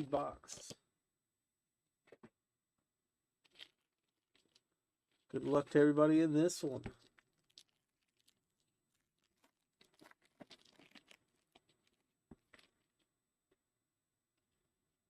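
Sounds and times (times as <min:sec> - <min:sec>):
foil wrapper crinkling and tearing: 0:03.4 - 0:05.3, 0:06.9 - 0:12.7.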